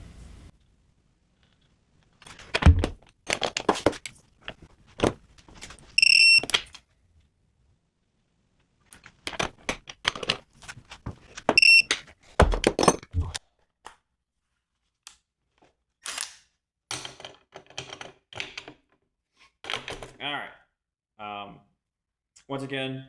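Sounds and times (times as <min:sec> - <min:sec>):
short high electronic beeps: 0:06.0 - 0:06.4, 0:11.6 - 0:11.9
tools and metal parts clicking: 0:16.0 - 0:18.8.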